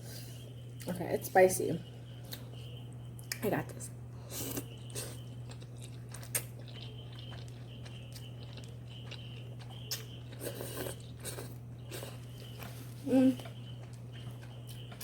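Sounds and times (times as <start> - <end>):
steady low hum: 0.0 - 15.0
person chewing noodles: 4.2 - 15.0.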